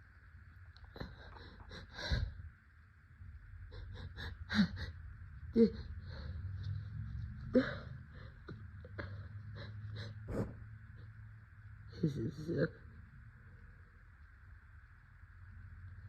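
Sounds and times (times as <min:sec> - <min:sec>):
wheezy gasping breaths: 0:01.0 - 0:02.4, 0:09.0 - 0:10.7.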